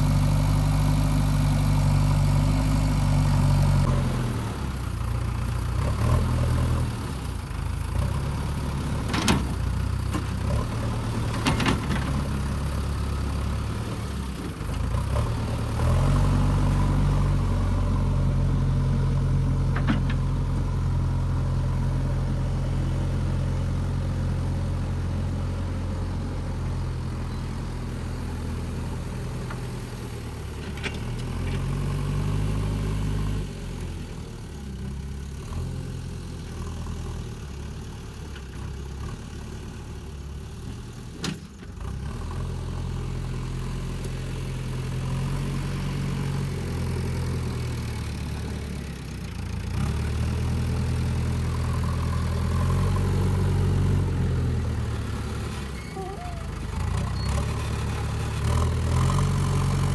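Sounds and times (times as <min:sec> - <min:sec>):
diesel engine revving: 0:10.4 - 0:27.2, 0:49.7 - 0:59.9.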